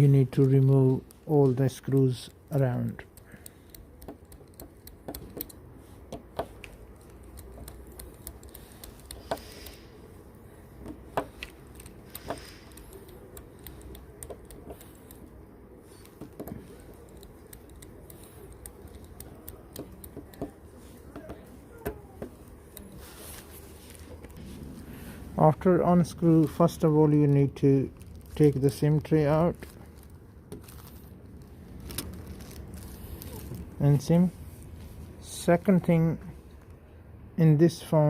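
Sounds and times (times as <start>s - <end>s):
screwdriver clicks and taps: 3.1s - 9.5s, 16.0s - 22.8s.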